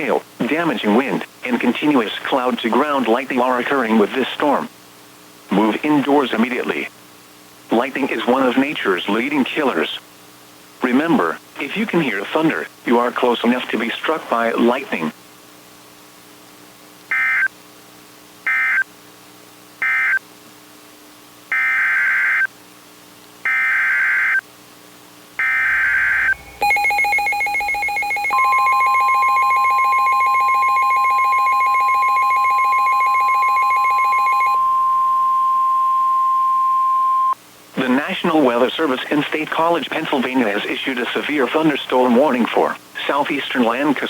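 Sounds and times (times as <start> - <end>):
steady warning alarm tone: 17.1 - 17.5, 18.5 - 18.9, 19.8 - 20.2, 21.5 - 22.5, 23.5 - 24.4, 25.4 - 37.4
fast-pulsing electronic alert beep: 25.4 - 35.4
data bursts: 25.4 - 37.4.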